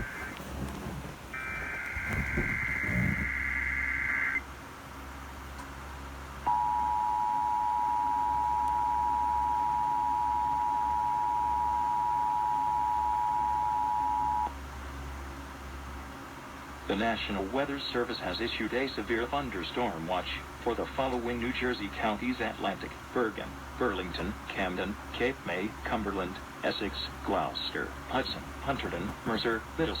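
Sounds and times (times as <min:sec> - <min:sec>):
low steady hum: 0:00.0 - 0:30.0
screechy data tones: 0:01.4 - 0:04.4.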